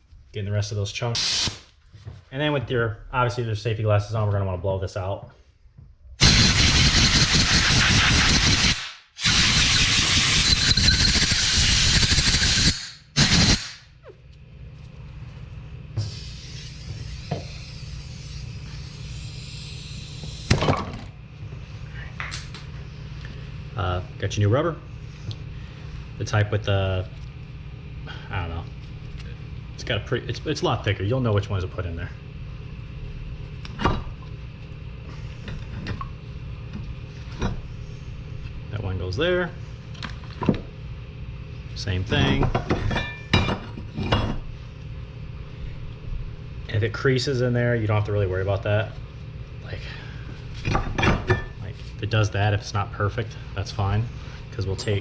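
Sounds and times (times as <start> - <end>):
steady low hum: 0.0 - 55.0
compressed air blow gun hissing: 16.0 - 20.5.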